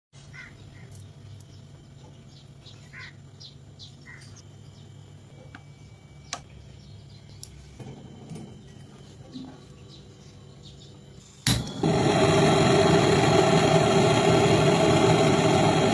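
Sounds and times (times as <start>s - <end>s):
short bird calls: 0.2s - 0.9s, 2.7s - 3.2s, 3.8s - 4.4s
steady low hum: 0.2s - 15.9s.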